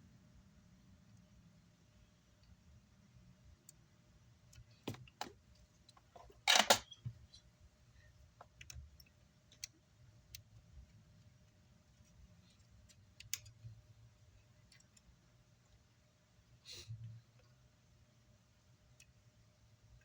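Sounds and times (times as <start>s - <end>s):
tools and parts clicking: 4.5s - 7.1s.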